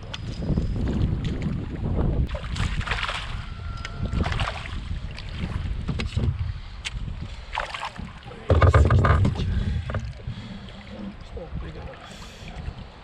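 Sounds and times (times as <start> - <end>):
water moving around kayak: 0.0 - 13.0
wind buffeting microphone: 0.0 - 13.0
rumble: 7.4 - 10.8
gear knocking on hull: 8.4 - 10.2.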